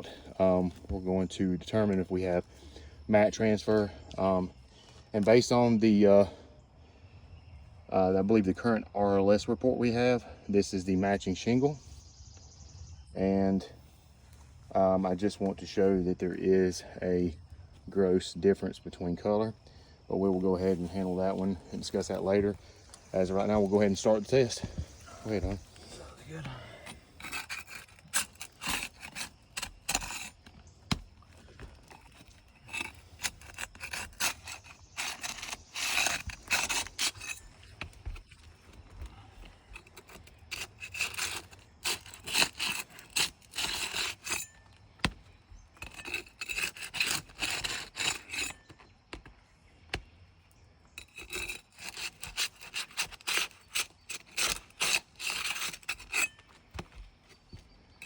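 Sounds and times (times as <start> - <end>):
hand tool scraping roof shingles: 20.2 - 50.1, 51.0 - 57.7.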